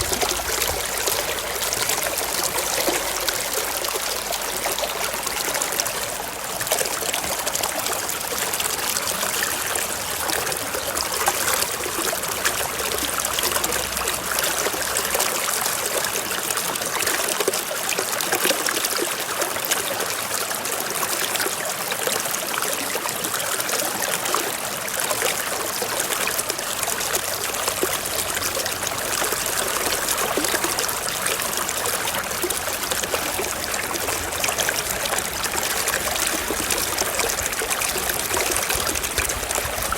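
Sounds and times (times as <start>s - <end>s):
waterfall rushing: 0.0s - 8.8s.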